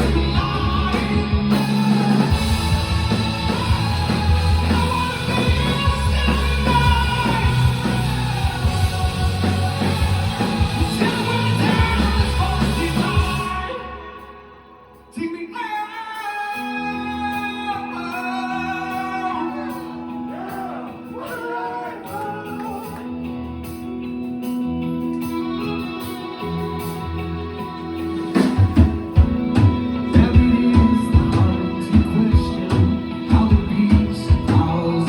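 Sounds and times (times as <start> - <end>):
steady bass notes: 0.0 - 13.8
heavy drums: 0.0 - 14.1, 25.9 - 35.0
singer's gliding voice: 0.0 - 23.3, 25.4 - 35.0
live rock band: 0.0 - 35.0.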